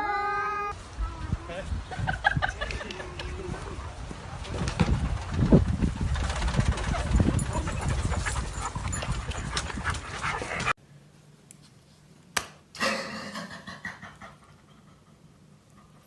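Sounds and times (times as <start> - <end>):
dog panting: 7.8 - 10.8, 14.0 - 16.0.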